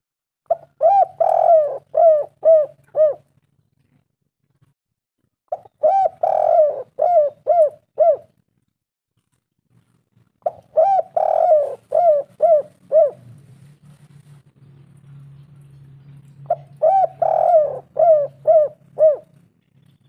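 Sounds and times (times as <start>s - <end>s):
dove cooing: 0.5s - 3.3s, 5.5s - 8.4s, 10.4s - 13.4s, 16.4s - 19.5s.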